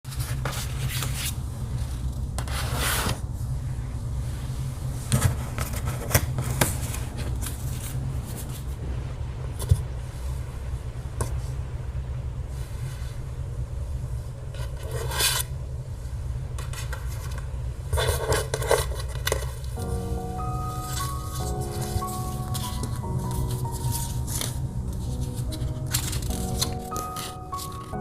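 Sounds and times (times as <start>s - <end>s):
cards rubbing and sliding: 0.1s - 1.4s, 21.0s - 28.0s
steady low hum: 0.1s - 28.0s.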